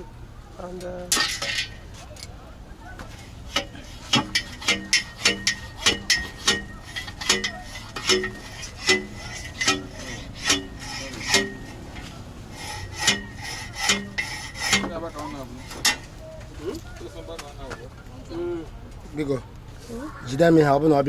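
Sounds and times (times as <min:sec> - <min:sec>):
hammer striking metal: 0:03.0 - 0:16.2.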